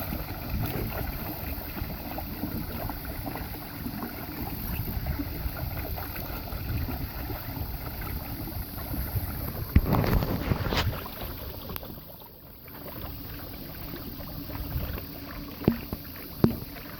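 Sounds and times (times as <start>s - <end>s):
water splashing against hull: 0.0s - 16.9s
wind buffeting microphone: 4.6s - 11.8s.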